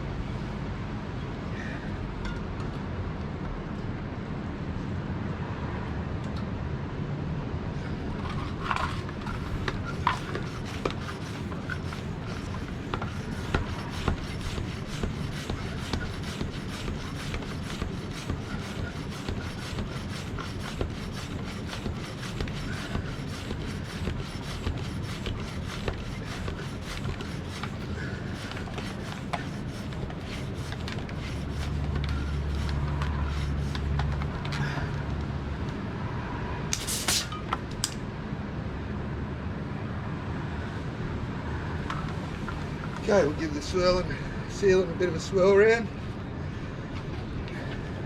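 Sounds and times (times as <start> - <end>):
air pump inflating tyre: 8.2 - 34.8, 36.7 - 37.5.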